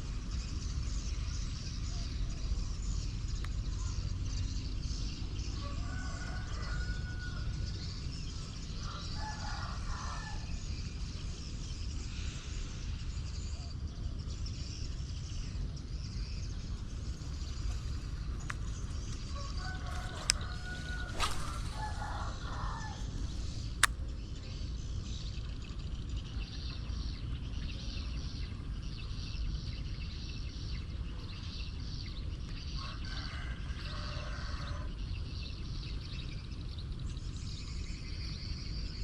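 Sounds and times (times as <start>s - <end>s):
sharp clicks: 23.5s - 24.1s.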